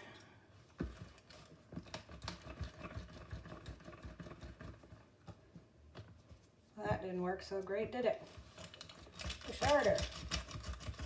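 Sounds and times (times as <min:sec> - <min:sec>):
kitchen utensils clicking and knocking: 0:08.3 - 0:11.0.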